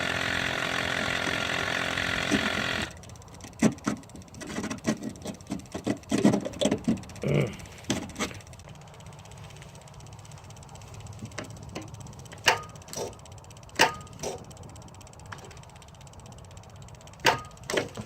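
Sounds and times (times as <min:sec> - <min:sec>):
engine-like running sound: 0:00.0 - 0:18.0
metal clicks and knocks: 0:03.4 - 0:07.2, 0:11.2 - 0:14.6.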